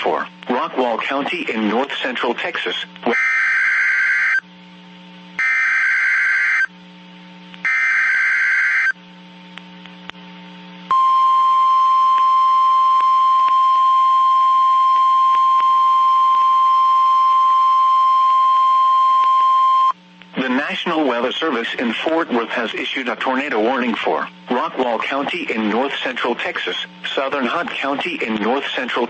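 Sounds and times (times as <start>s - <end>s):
steady high alarm tone: 3.1s - 4.4s, 5.4s - 6.7s, 7.6s - 9.0s.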